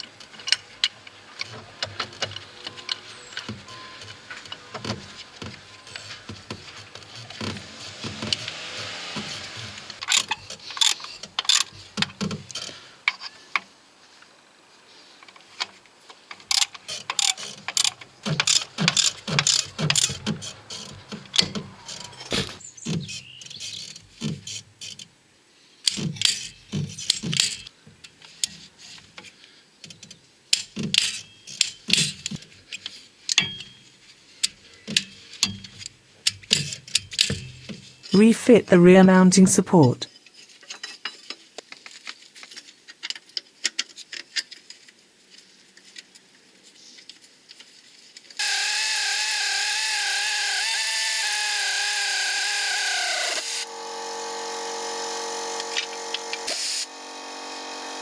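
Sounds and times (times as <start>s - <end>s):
hand tools clanking on metal: 16.4s - 25.0s, 25.9s - 29.2s, 30.0s - 38.1s.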